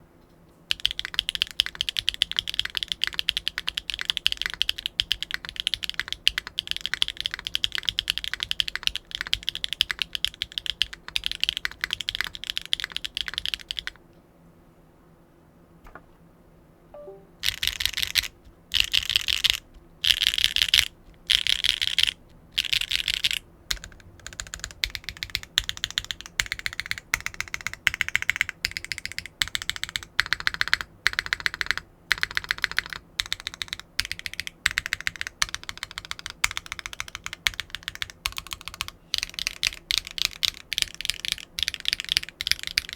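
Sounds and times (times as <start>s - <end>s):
fast mechanical keyboard typing: 0.7s - 14.0s, 17.4s - 42.9s.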